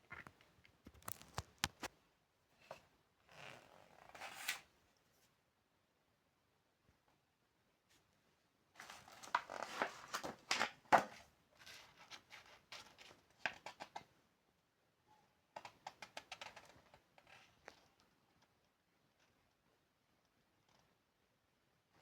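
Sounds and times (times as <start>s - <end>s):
rustling and crinkling handling: 0.0s - 2.0s, 8.8s - 14.1s.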